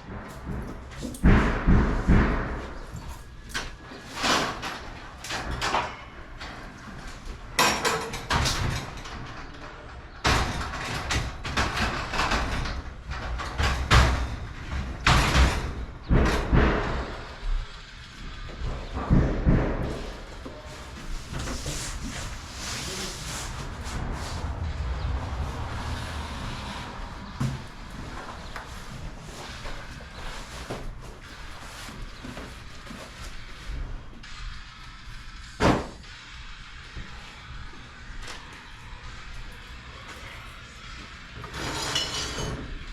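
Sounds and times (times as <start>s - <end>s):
garage door knocks and clanks: 0.0s - 20.6s.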